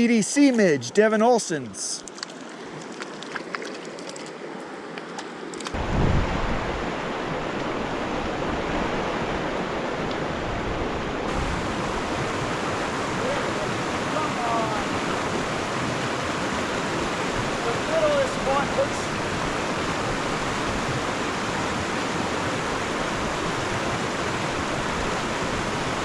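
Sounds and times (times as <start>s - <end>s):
rushing river water: 0.4s - 26.0s.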